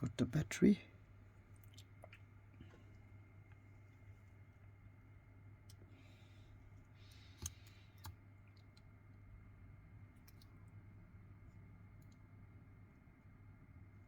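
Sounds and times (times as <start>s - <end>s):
low steady hum: 0.0s - 14.0s
small clicks and taps of tools: 7.1s - 8.9s.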